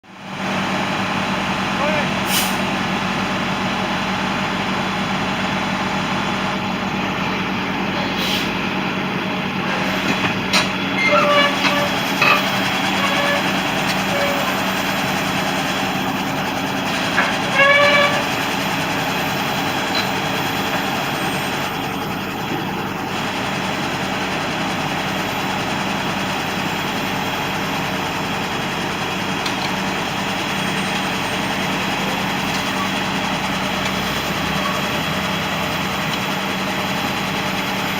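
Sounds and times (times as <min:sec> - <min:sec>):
diesel engine running: 0:00.0 - 0:37.9
high-pitched squeals: 0:10.8 - 0:16.1, 0:16.9 - 0:18.5.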